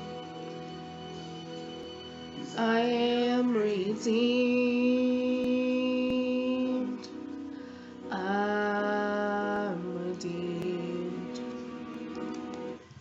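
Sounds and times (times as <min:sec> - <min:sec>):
instrumental closing chords: 0:00.0 - 0:12.8.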